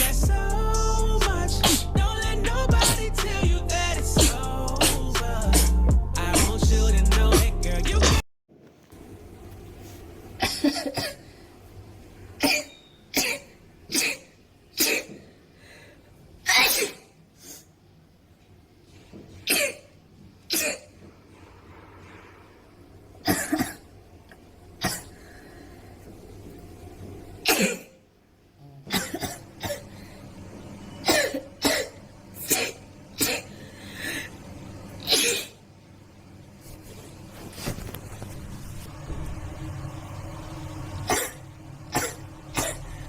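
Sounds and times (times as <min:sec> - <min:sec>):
girl sneezing: 0:16.5 - 0:17.6.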